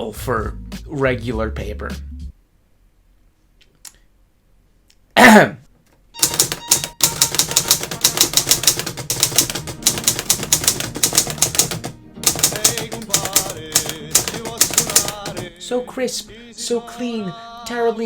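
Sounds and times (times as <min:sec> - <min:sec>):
typewriter key strikes: 0:06.2 - 0:15.5.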